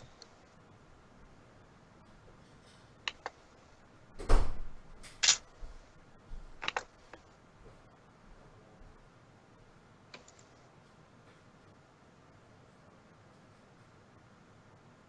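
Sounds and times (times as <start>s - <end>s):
small clicks and taps: 3.1s - 3.4s, 5.0s - 7.3s, 10.1s - 10.6s.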